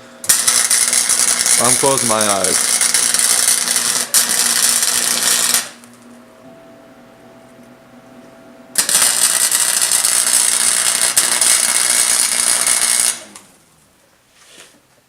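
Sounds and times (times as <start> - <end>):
welding arc crackling: 0.0 - 6.1, 8.7 - 13.8
low electrical hum: 0.0 - 15.0.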